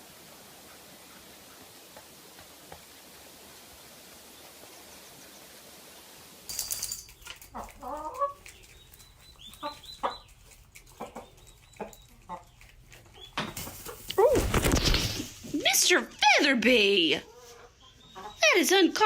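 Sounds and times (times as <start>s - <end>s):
chicken clucking: 7.5s - 14.4s, 17.3s - 18.6s.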